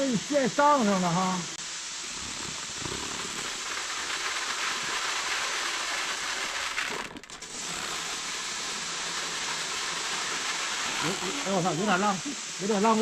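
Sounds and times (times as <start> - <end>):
dry beans pouring into a bag: 3.3 - 12.2.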